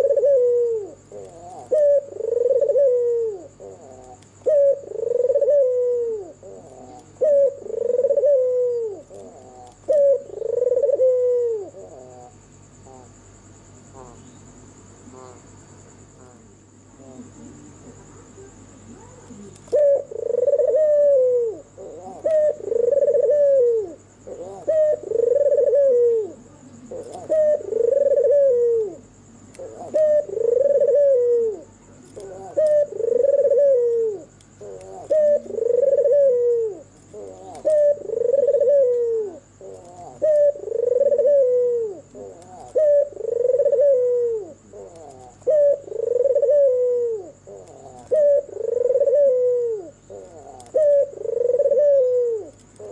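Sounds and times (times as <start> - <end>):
dove cooing: 0.0 - 13.2, 16.2 - 52.9.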